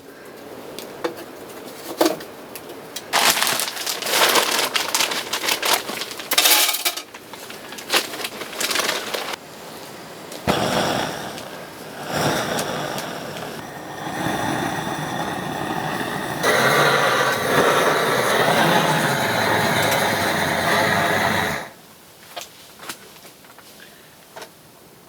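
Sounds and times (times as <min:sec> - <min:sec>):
motor humming: 0:10.2 - 0:21.7.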